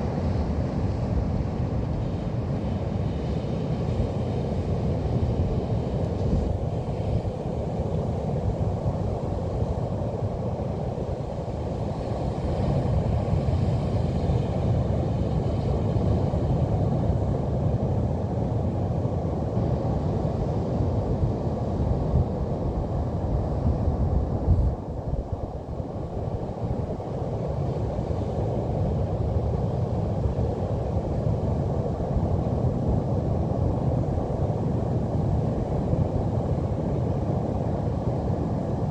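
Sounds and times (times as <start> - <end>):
ocean surf rumble: 0.0 - 38.9.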